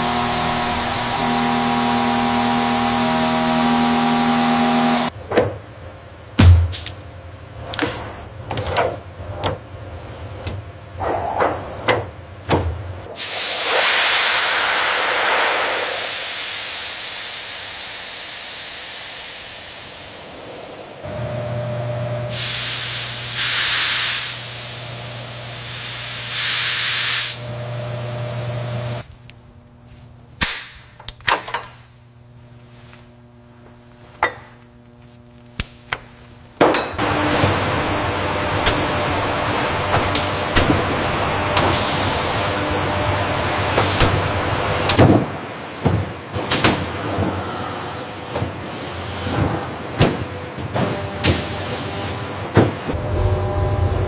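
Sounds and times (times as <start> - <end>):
machinery low hum: 0.0 - 13.3, 15.7 - 30.4, 31.7 - 54.0
loud hissing spray bursts: 13.2 - 20.9, 22.3 - 27.5, 41.7 - 42.6.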